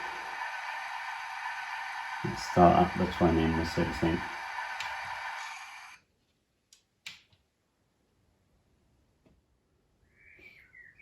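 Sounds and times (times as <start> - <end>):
diesel idling sound through small speaker: 0.0 - 6.0.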